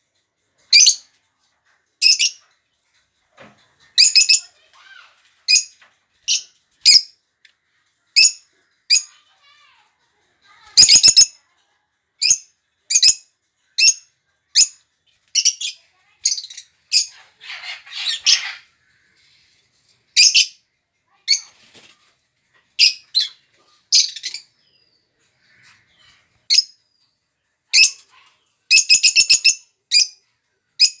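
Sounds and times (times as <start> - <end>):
parrots chirping: 4.0 - 7.2, 10.8 - 11.4, 13.8 - 18.9, 22.8 - 24.8, 27.7 - 30.2.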